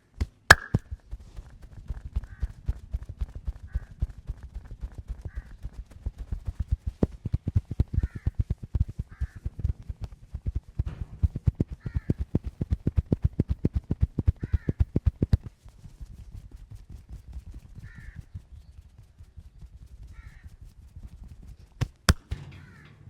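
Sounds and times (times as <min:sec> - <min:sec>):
hands slapping on a body: 0:00.5 - 0:00.8, 0:21.8 - 0:22.3
sharp snaps: 0:00.5 - 0:00.9, 0:21.8 - 0:22.4
crows cawing: 0:14.4 - 0:14.7.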